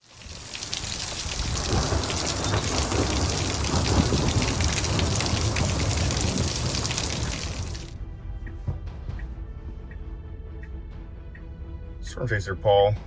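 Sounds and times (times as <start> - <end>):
heavy rain pattering: 0.0 - 8.0
low rumble: 1.1 - 11.2.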